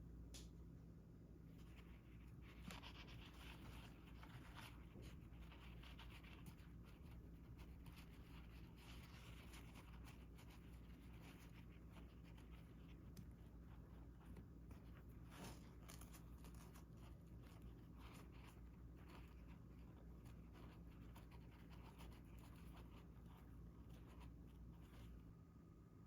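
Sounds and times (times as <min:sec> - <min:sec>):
low steady hum: 0:00.0 - 0:26.0
scratching on keyboard parts: 0:01.6 - 0:25.2.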